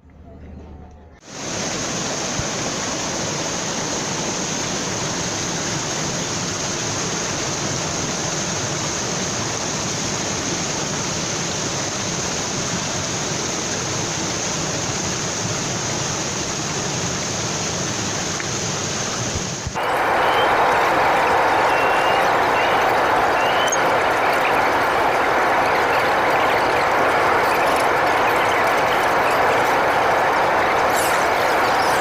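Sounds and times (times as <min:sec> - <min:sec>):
running water: 0:15.0 - 0:32.0.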